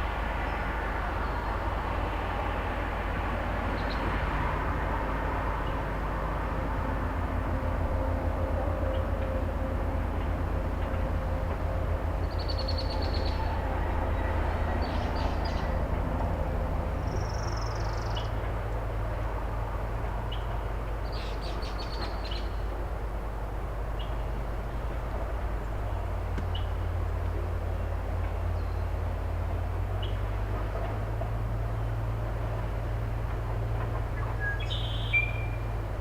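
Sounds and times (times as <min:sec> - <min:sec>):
excavator diesel engine drone: 0:00.0 - 0:36.0
short high bird calls: 0:34.4 - 0:35.6.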